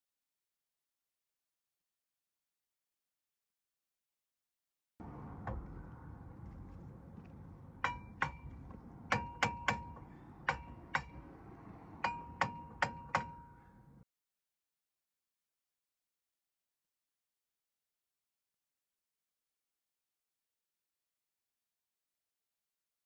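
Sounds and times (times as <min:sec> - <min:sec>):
hammer striking metal: 0:07.8 - 0:11.4, 0:12.0 - 0:13.9.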